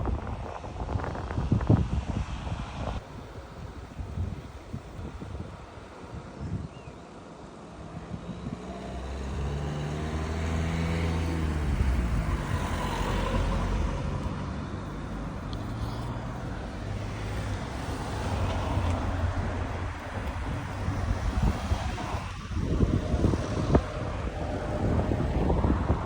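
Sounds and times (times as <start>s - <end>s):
traffic noise: 0.0s - 26.0s
vehicle engine passing close: 7.7s - 26.0s.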